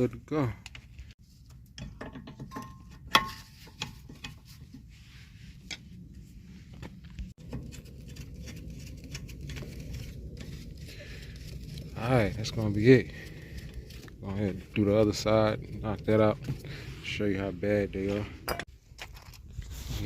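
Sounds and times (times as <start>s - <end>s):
metal tools clicking and clanking: 1.5s - 4.5s
steady low hum: 2.7s - 18.7s.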